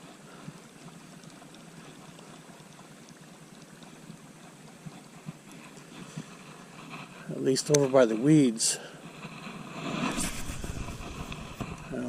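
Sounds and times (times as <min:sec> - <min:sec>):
soft ticks and pops: 0:00.0 - 0:08.0
outdoor background hiss: 0:05.2 - 0:12.0.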